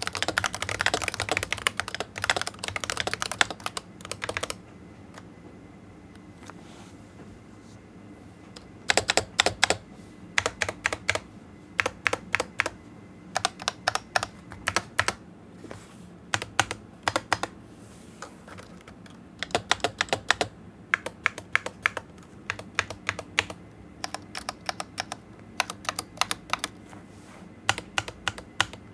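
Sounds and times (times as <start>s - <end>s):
keyboard typing clicks: 0.0s - 4.6s, 8.6s - 9.8s, 10.4s - 11.2s, 13.4s - 15.2s, 16.3s - 17.5s, 18.5s - 26.8s, 27.7s - 28.9s.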